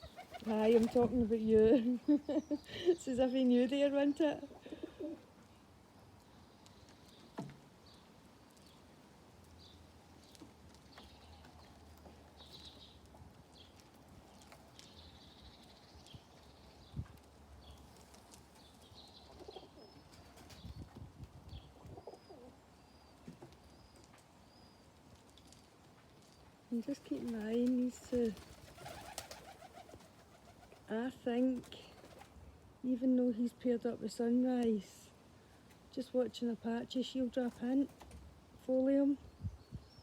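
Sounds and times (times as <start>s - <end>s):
pigeons cooing: 4.6s - 5.3s, 21.9s - 22.6s.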